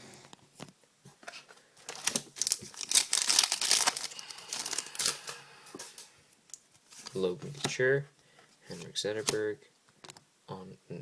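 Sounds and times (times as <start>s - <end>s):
foil wrapper tearing and crinkling: 1.8s - 5.3s.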